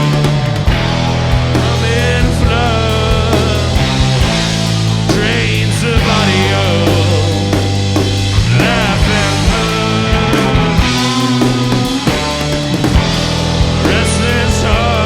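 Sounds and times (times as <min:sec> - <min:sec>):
bass guitar: 0:00.0 - 0:15.0
distorted electric guitar: 0:00.0 - 0:15.0
drum kit beat: 0:00.0 - 0:15.0.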